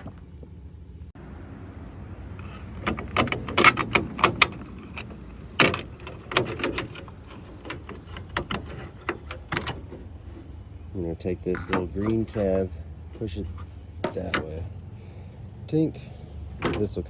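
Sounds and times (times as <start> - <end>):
metallic clicks and rattles of tools: 2.4 - 10.5.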